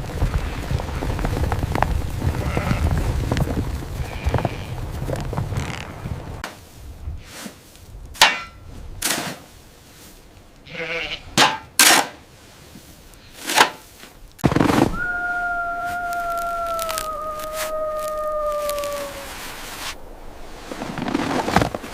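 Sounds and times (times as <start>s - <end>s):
sheep bleating: 10.6s - 11.3s
sharp cracks: 14.4s - 20.0s
wolf howling: 14.9s - 19.9s.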